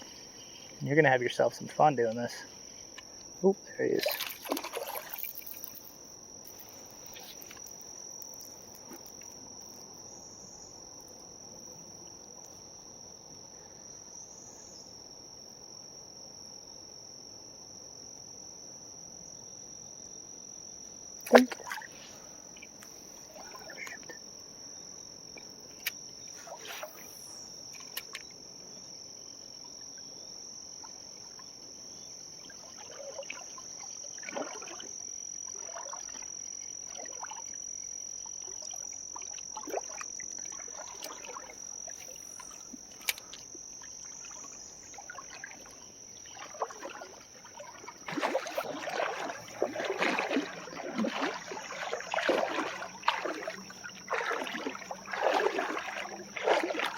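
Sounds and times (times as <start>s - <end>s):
insects buzzing: 0.0s - 56.9s
rustling and splashing: 4.0s - 9.2s, 32.6s - 37.6s, 38.4s - 56.9s.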